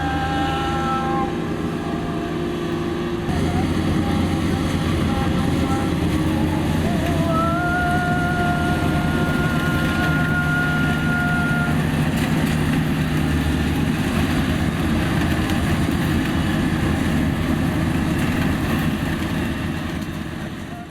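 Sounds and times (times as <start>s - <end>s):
thin high whine: 0.0s - 12.0s
diesel engine running: 0.0s - 20.9s.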